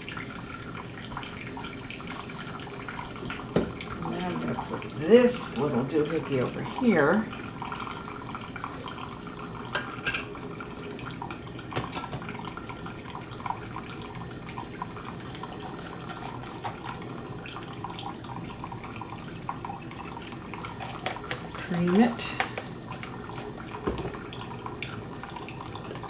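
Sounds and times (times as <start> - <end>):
running water trickling: 0.0 - 26.0
kitchen items clicking and knocking: 20.8 - 22.7.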